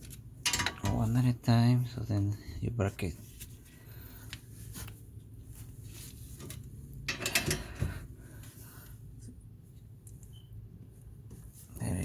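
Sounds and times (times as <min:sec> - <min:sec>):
wrench clicking on metal bolts: 0:07.1 - 0:07.7.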